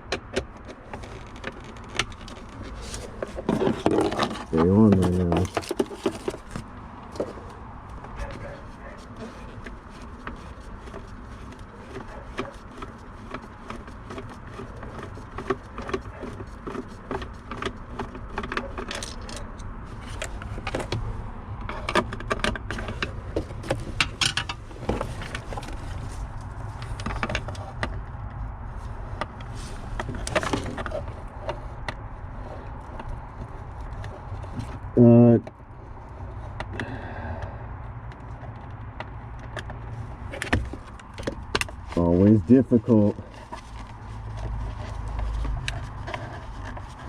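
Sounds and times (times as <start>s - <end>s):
tools and metal parts rattling: 8.1s - 20.9s.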